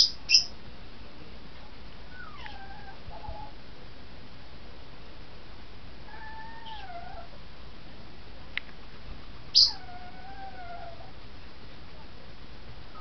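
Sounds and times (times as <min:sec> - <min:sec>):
shrill chirp: 0:00.0 - 0:00.5, 0:09.6 - 0:09.8
dog whining: 0:02.1 - 0:03.5, 0:06.1 - 0:07.3, 0:09.6 - 0:11.1.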